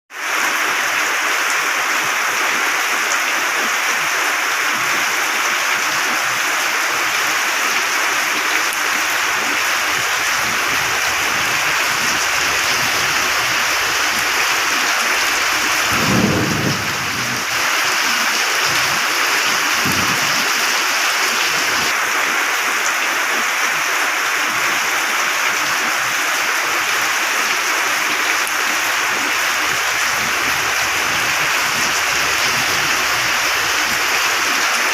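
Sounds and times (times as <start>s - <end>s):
heavy rain falling: 0.2s - 34.9s
low rumble of thunder: 9.8s - 17.7s, 19.7s - 20.4s.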